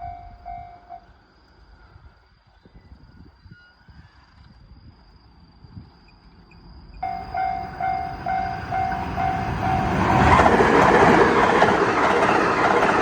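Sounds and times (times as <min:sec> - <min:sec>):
level-crossing alarm ringing: 0:00.0 - 0:01.0, 0:07.0 - 0:13.0
train rolling rumble: 0:00.0 - 0:02.6, 0:04.4 - 0:13.0.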